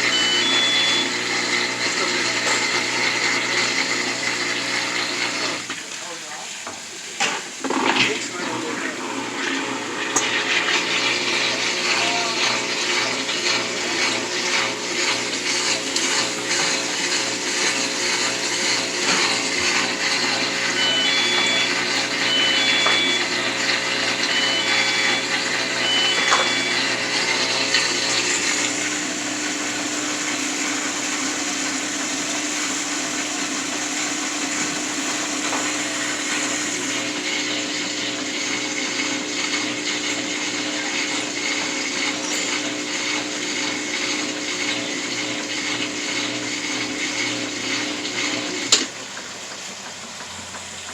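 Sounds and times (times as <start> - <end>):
draining water: 0.0 - 50.9
washing machine motor and pump whir: 0.0 - 50.9
faint short high beeps: 20.7 - 23.4, 24.3 - 27.4.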